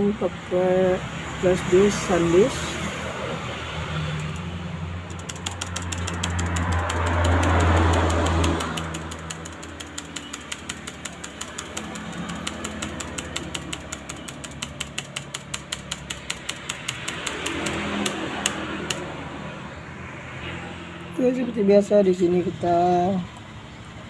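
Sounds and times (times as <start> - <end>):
engine humming and ticking: 1.6 - 20.0.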